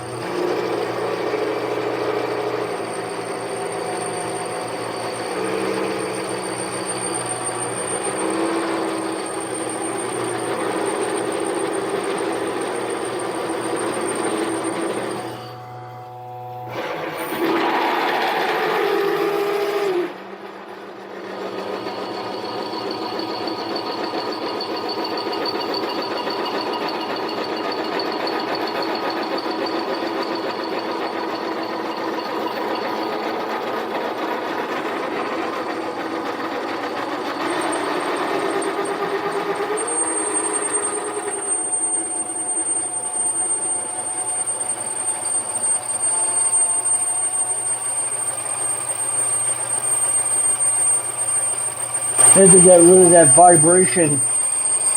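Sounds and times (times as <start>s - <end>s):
lathe cutting with motor whine: 0.0s - 54.9s
thin high whine: 40.0s - 54.9s.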